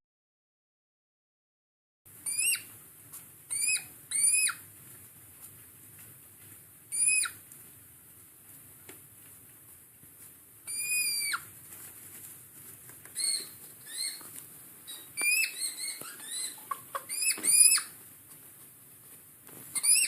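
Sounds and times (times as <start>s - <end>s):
hedgehog squeaking: 2.2s - 2.7s, 3.5s - 4.6s, 6.9s - 7.4s, 10.6s - 11.5s, 13.1s - 18.0s, 19.7s - 20.0s.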